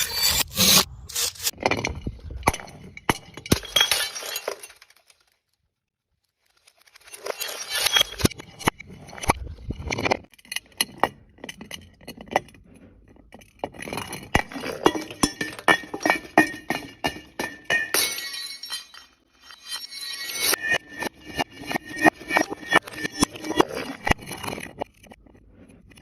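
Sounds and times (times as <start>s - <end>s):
glass bottles shattering: 1.6s - 5.4s, 6.9s - 9.3s, 13.8s - 24.6s
broken glass tinkling: 2.9s - 5.1s, 14.7s - 21.0s.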